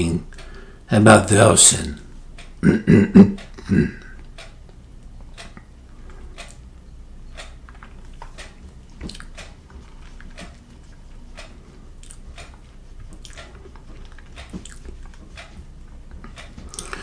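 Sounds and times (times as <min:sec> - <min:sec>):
person speaking: 0:00.0 - 0:00.3, 0:00.9 - 0:02.1
low steady background noise: 0:00.0 - 0:17.0
faint clicks and crackles: 0:03.4 - 0:17.0.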